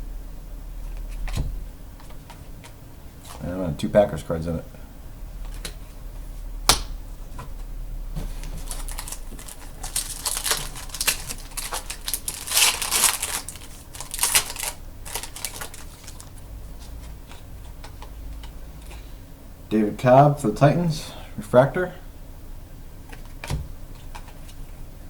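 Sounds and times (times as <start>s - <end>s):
foil wrapper crinkling: 8.3s - 16.9s.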